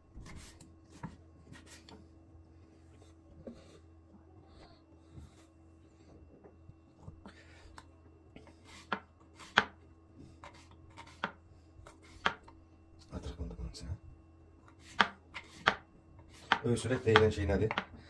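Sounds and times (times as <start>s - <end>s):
knife scraping: 8.5s - 12.4s
knife chopping ginger: 8.8s - 9.8s, 14.7s - 18.0s.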